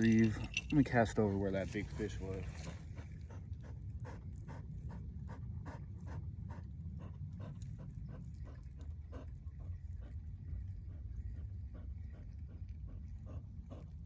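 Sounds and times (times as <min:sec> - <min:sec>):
dog panting: 0:00.0 - 0:14.0.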